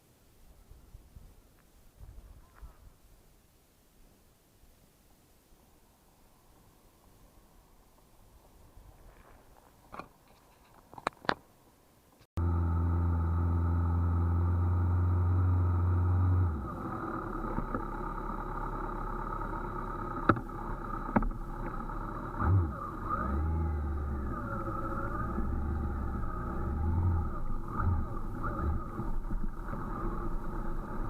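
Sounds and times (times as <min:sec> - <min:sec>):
vehicle engine running: 0:12.4 - 0:31.0.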